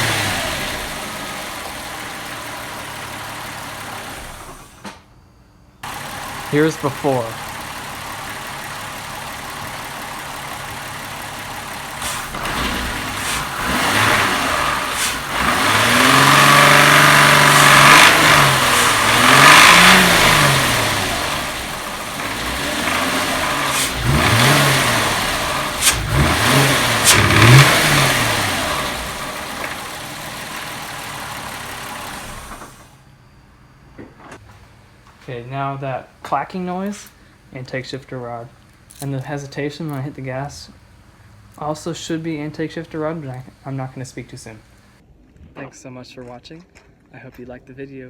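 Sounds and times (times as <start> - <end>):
car engine idling and revving: 0.0 - 4.8, 5.8 - 33.0
sharp mechanical clacks: 25.8 - 27.8.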